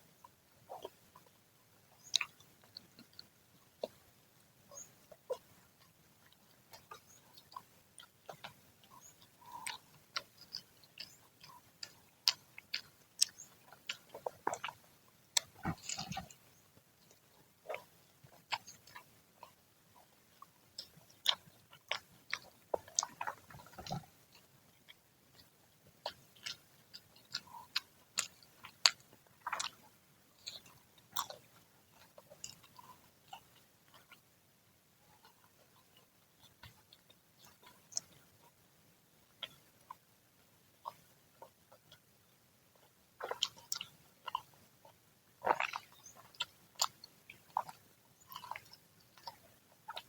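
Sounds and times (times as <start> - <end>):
crunchy chewing of fried food: 0.0 - 50.0.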